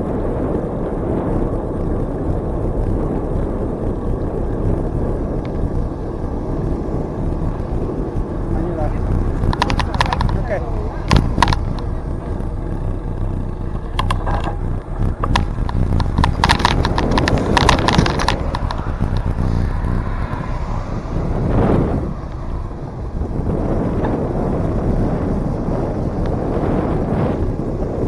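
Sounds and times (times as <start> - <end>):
wind rumble on microphone: 0.0 - 28.0
rattling clicks: 9.2 - 12.4, 13.4 - 20.0.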